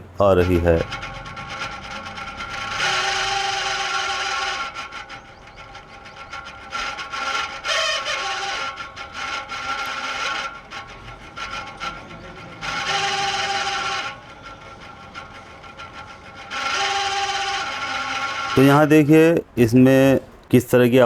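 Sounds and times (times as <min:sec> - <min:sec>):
exhaust fan grinding: 0:00.0 - 0:21.0.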